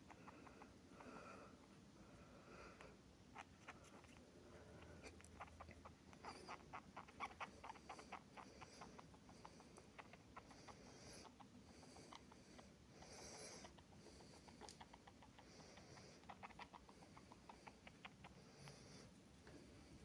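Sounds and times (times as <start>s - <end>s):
mouse squeaks: 3.3s - 4.2s, 4.8s - 18.9s.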